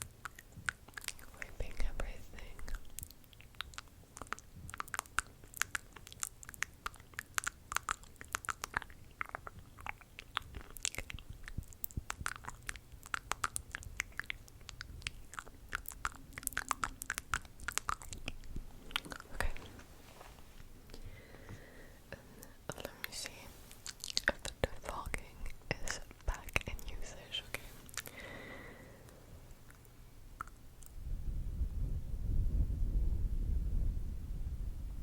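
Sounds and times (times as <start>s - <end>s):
lip and tongue clicks: 0.0s - 1.3s, 2.4s - 19.6s, 23.8s - 27.3s, 27.9s - 28.2s, 29.6s - 31.0s.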